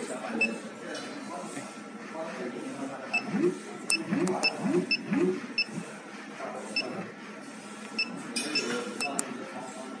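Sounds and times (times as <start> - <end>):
motor whirs rising in pitch: 3.2 - 5.9.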